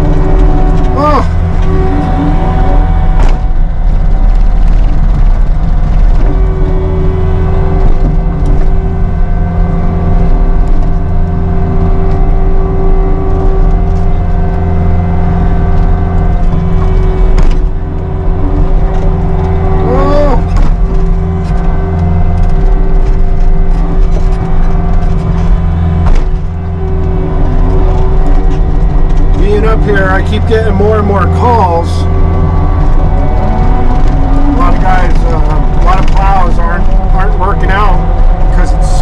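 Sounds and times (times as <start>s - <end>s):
diesel engine under load: 0.0s - 39.0s
steady whine: 0.0s - 39.0s
knocks and clunks: 13.3s - 19.8s, 20.4s - 39.0s.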